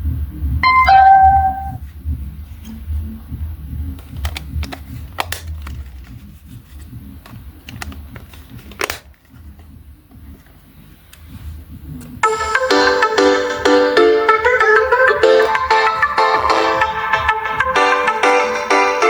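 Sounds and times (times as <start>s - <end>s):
electronic tone from small speaker: 0.6s - 1.8s.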